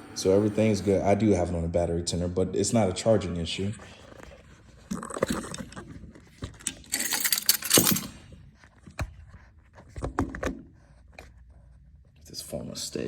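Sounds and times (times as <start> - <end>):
jingling rattle: 6.8 - 8.2.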